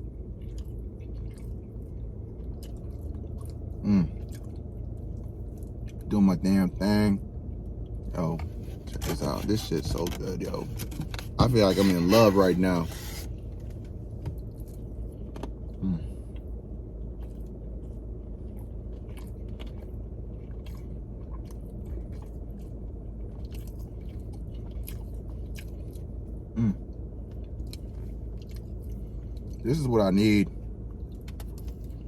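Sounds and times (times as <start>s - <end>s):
man chewing food: 0.0s - 6.1s, 13.0s - 29.7s, 30.6s - 32.0s
steady low hum: 0.0s - 32.0s
short vocal hum: 3.8s - 4.2s, 26.6s - 26.8s.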